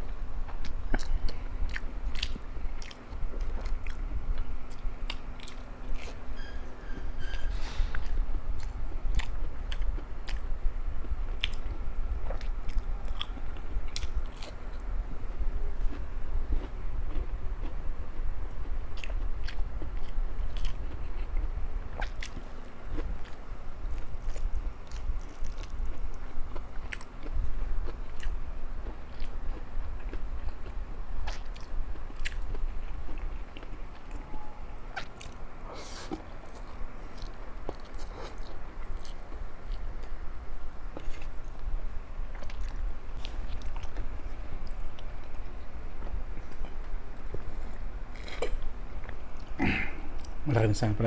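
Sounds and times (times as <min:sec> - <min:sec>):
chewing and biting food: 0:00.0 - 0:06.5, 0:07.3 - 0:50.4.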